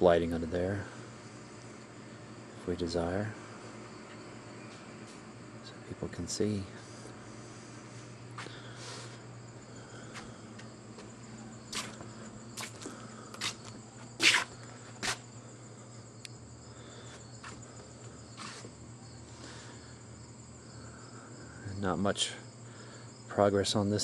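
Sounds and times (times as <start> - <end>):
crickets chirping: 0.0 - 24.0.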